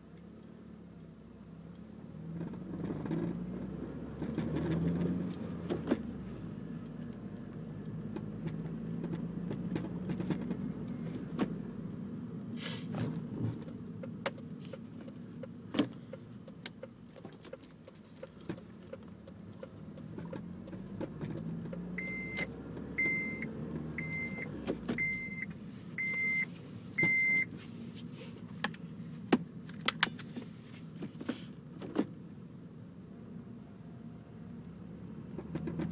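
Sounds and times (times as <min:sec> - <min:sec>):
sharp clicks and light rattles: 0:13.1 - 0:21.9
car chime beeping: 0:21.9 - 0:27.5.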